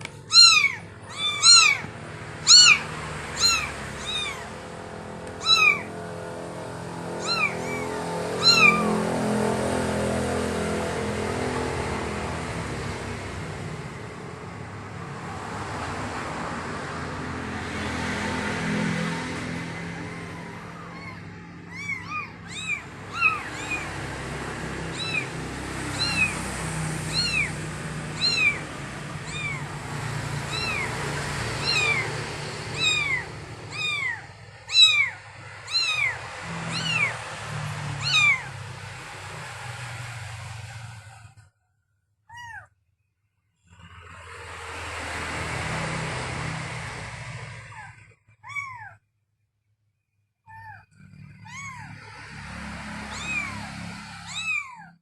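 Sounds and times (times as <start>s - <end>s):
kittens mewing: 0.0s - 10.5s, 17.4s - 39.4s, 42.3s - 42.8s, 47.0s - 49.0s, 50.5s - 55.0s.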